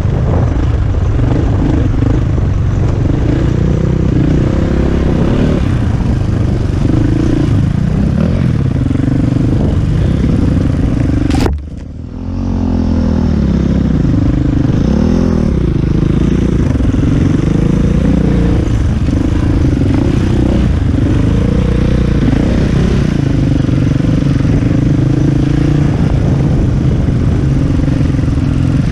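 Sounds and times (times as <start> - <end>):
motorcycle engine revving: 0.0 - 28.9
sharp click: 11.2 - 11.9.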